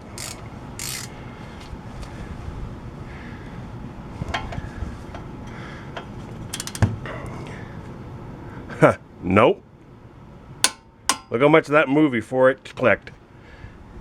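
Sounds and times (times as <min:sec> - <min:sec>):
torque wrench clicks and knocks: 0:00.2 - 0:01.1, 0:04.3 - 0:06.9, 0:10.6 - 0:11.4.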